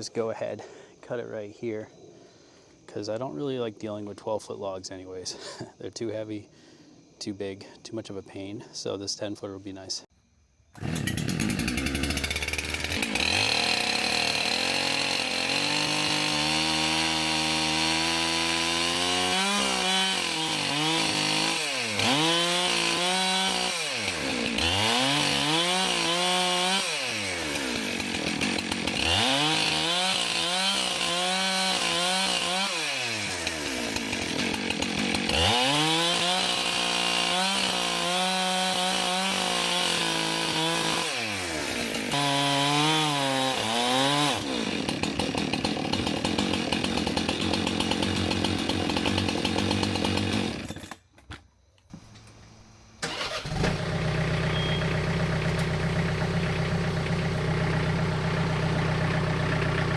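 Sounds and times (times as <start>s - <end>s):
chainsaw cutting a log: 10.8s - 51.0s, 53.0s - 59.9s.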